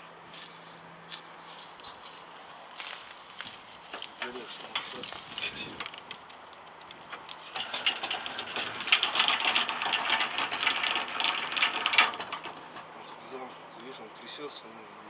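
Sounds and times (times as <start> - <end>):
refrigerator compressor rattling: 4.2 - 13.0.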